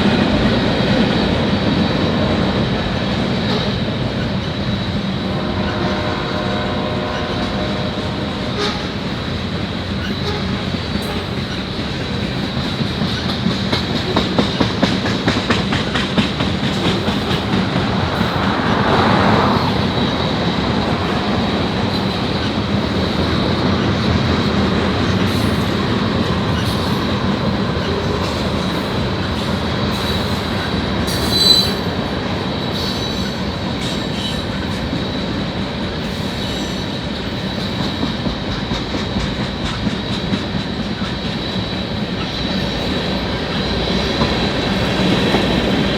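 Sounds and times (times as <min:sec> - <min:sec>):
freight train rumble: 0:00.0 - 0:45.9
wheels clicking over rail joints: 0:09.4 - 0:45.9
high wheel squeal: 0:25.3 - 0:32.1
wheel screech: 0:29.9 - 0:31.9.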